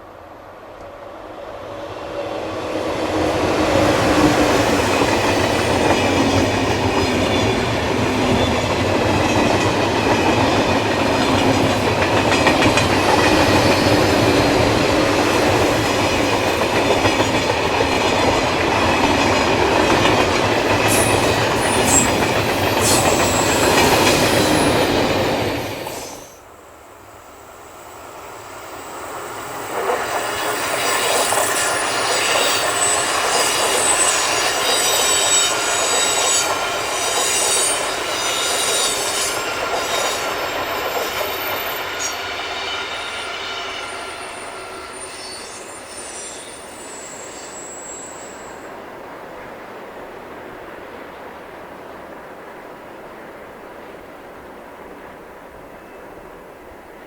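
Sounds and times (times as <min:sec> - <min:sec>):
train wheels rumbling on rails: 0:00.6 - 0:26.5, 0:27.3 - 0:56.2
clickety-clack over rail joints: 0:02.6 - 0:25.7, 0:29.6 - 0:42.8
high wheel squeals: 0:20.9 - 0:26.4, 0:27.8 - 0:36.6, 0:40.8 - 0:48.7.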